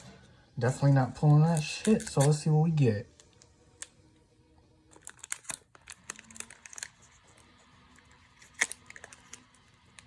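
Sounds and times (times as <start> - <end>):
foil wrapper crackling: 5.0 - 10.0
foil snapping: 8.4 - 9.5.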